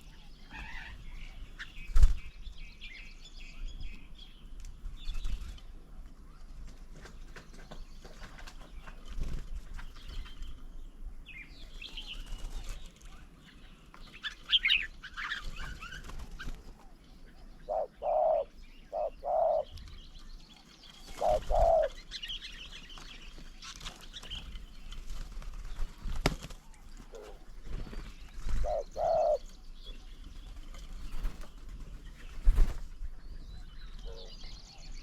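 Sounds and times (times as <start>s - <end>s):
small birds chirping: 0.0s - 35.0s
dove cooing: 14.6s - 19.8s, 21.1s - 22.1s, 26.8s - 27.9s, 28.5s - 29.6s.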